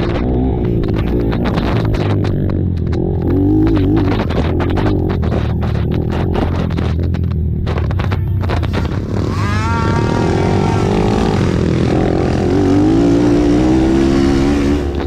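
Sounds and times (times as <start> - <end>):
atv engines revving hard: 0.0 - 15.0.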